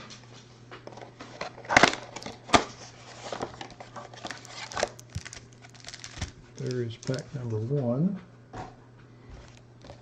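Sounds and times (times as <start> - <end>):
card packs crinkling and rustling: 0.9 - 7.8, 9.4 - 10.0
cardboard boxes tearing open: 4.2 - 6.3.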